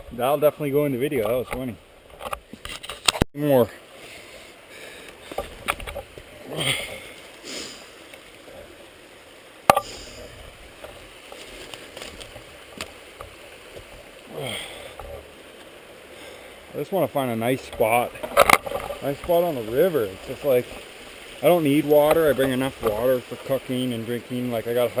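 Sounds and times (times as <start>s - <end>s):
stream rushing: 0.0s - 25.0s
rustling: 9.8s - 15.8s.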